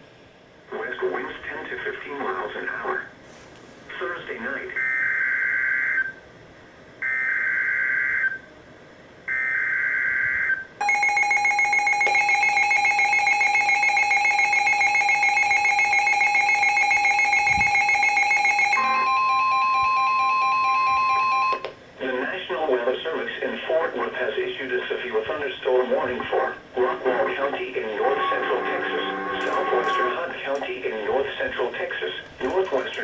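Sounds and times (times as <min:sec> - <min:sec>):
steady high alert tone: 0:10.8 - 0:21.6, 0:28.1 - 0:30.8.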